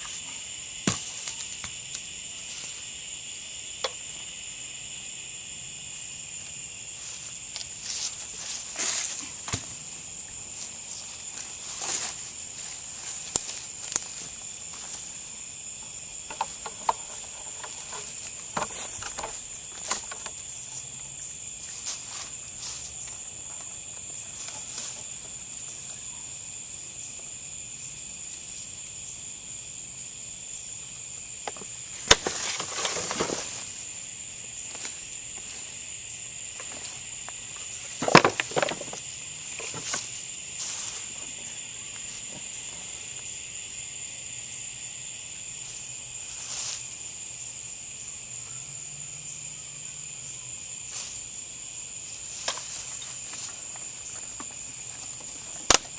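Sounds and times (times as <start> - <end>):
insects chirring: 0.0 - 55.9
clicks and rustling: 37.9 - 39.0.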